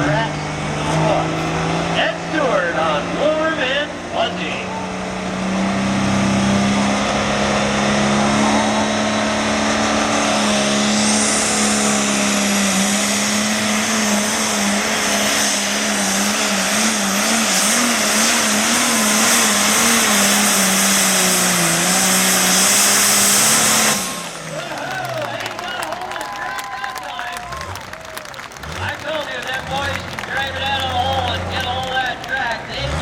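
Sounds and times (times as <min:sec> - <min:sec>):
diesel engine at full throttle: 0:00.0 - 0:33.0.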